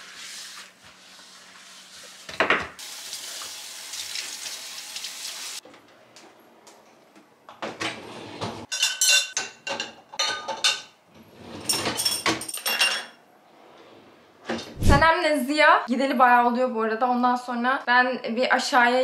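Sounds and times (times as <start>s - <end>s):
frying sizzle: 0.0s - 5.6s
dishes and cutlery clattering: 8.6s - 11.0s, 11.6s - 13.2s.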